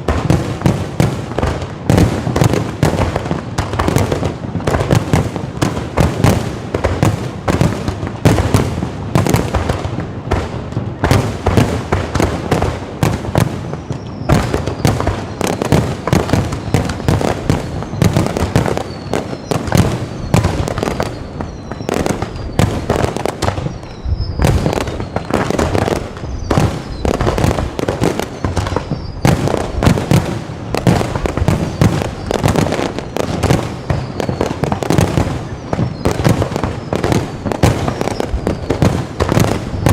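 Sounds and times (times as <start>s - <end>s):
fireworks bursting: 0.0s - 39.9s
falling whistles: 13.8s - 15.8s, 16.4s - 25.5s, 26.2s - 27.4s, 28.2s - 29.4s, 31.7s - 37.2s, 37.8s - 39.9s.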